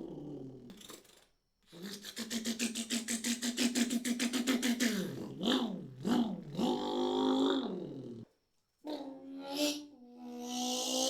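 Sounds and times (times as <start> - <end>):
person imitating car engine: 1.8 - 8.0.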